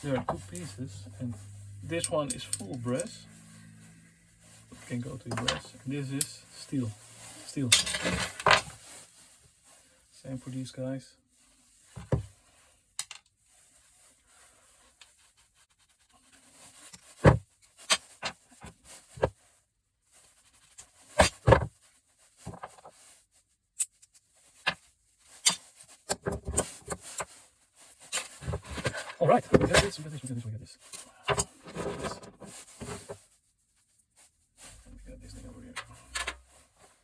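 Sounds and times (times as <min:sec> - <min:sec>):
small metal parts clinking: 0:05.2 - 0:06.4.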